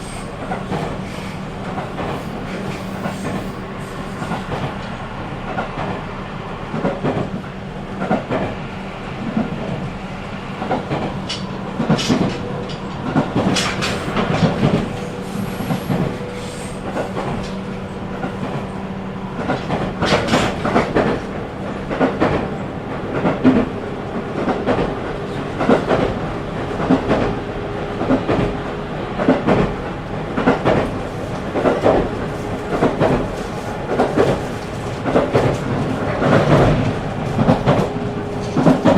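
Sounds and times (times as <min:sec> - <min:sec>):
train wheels clacking over rail joints: 0:10.6 - 0:18.7, 0:19.4 - 0:21.3, 0:29.2 - 0:38.9.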